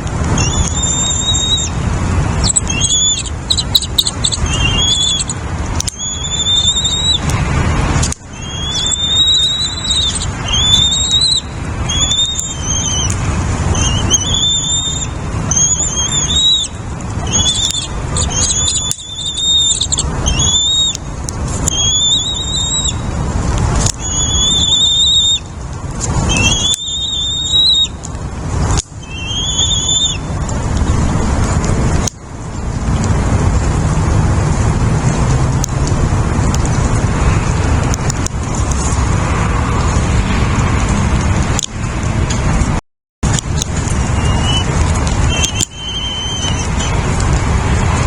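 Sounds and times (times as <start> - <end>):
steady rushing noise: 0.0 - 48.0
bird squealing calls: 0.4 - 1.8, 2.4 - 7.2, 8.3 - 21.0, 21.6 - 23.1, 23.8 - 25.5, 26.3 - 28.0, 29.0 - 30.3, 44.1 - 44.7, 45.3 - 46.9.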